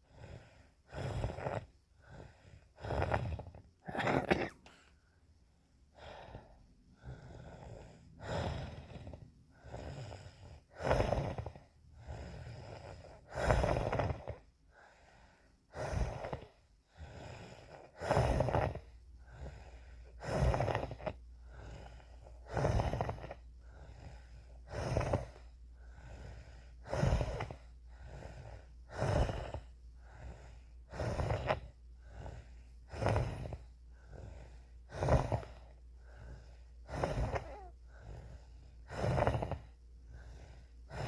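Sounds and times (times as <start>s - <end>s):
person wheezing breaths: 32.0s - 41.0s.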